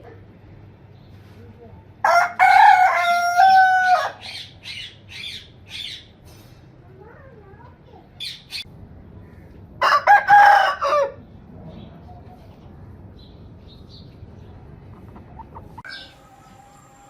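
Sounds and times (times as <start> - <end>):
rooster crowing: 2.0 - 4.2, 9.8 - 11.2.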